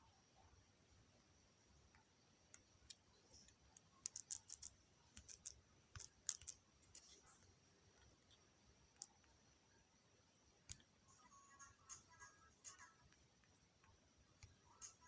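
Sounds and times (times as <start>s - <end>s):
fingers tapping on touchscreen: 2.0s - 7.4s, 10.6s - 15.0s.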